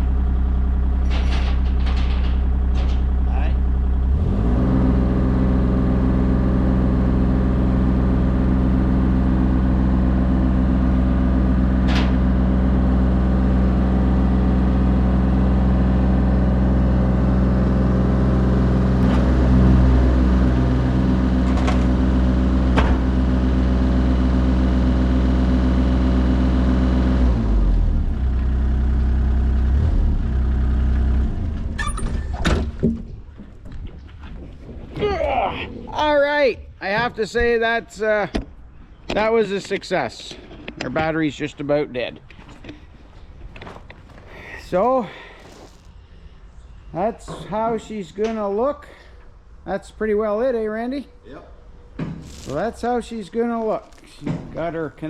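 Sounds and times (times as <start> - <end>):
knocks and clatter: 1.0 - 3.2, 21.3 - 23.2, 31.4 - 34.9.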